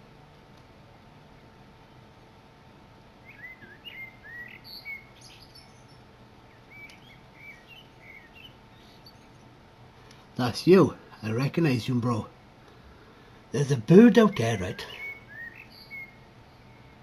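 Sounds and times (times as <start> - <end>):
songbird singing: 3.1 - 12.4, 13.5 - 17.0.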